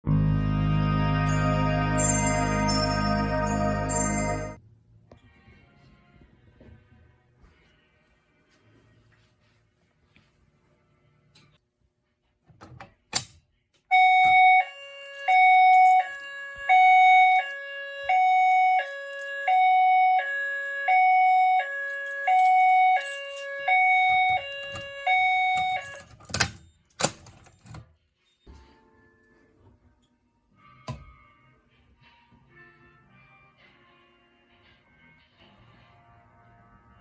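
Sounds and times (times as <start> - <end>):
fire alarm hi-lo tone: 0.1 - 4.6, 13.9 - 26.1.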